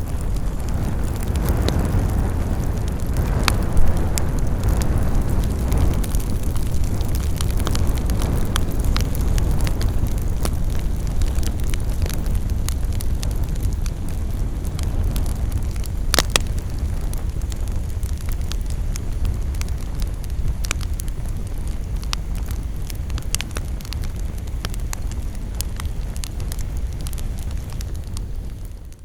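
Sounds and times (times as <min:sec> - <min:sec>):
burning wood crackling and popping: 0:00.0 - 0:29.0
campfire rumble: 0:00.0 - 0:29.0.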